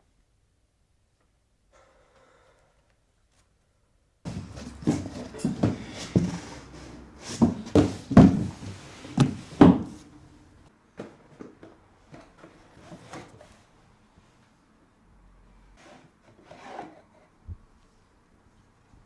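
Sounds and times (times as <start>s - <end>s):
wooden knocks and thuds: 4.3s - 6.5s, 7.4s - 10.0s.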